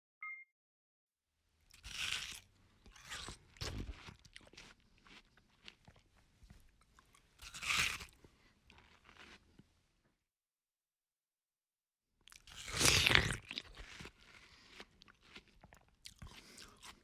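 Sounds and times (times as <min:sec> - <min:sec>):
person crunching watermelon: 0:01.6 - 0:09.7, 0:12.3 - 0:17.0.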